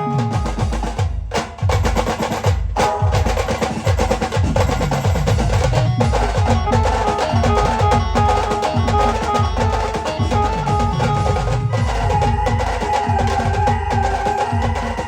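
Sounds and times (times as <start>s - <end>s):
fast driving drum rhythm: 0.0s - 15.0s
melody of held notes: 5.8s - 12.2s.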